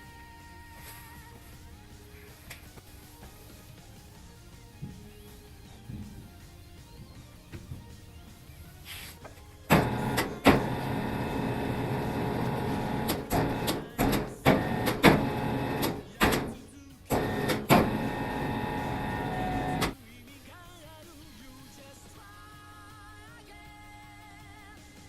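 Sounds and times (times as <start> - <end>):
power tool motor running: 9.7 - 20.0.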